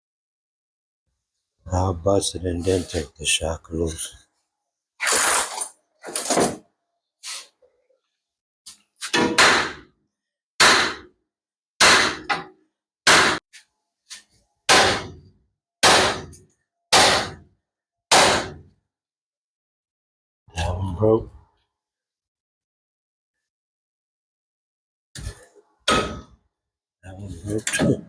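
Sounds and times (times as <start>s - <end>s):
hammer striking steel: 10.6s - 11.1s, 11.8s - 12.5s, 13.1s - 13.4s, 14.7s - 15.2s, 15.8s - 16.4s, 17.0s - 17.4s, 18.1s - 18.6s.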